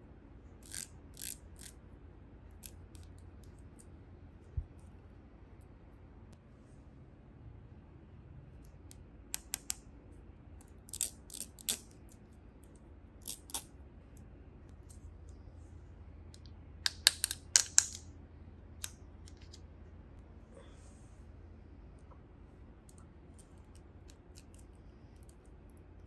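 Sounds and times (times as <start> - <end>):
plastic toy pieces clicking: 10.9 - 11.8, 16.9 - 18.1.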